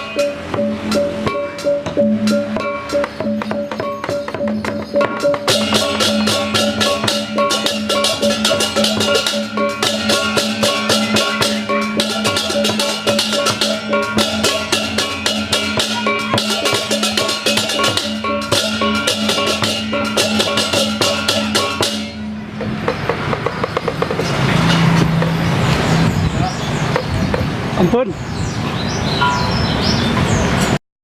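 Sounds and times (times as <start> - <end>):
crashing cymbals: 0.0 - 23.0
gamelan music: 0.0 - 27.1, 29.1 - 30.4
drum strokes: 0.0 - 27.8.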